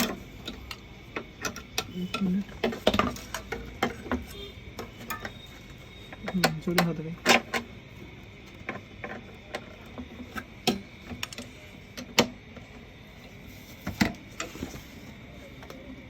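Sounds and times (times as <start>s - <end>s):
tools and metal parts clinking: 0.0s - 7.7s.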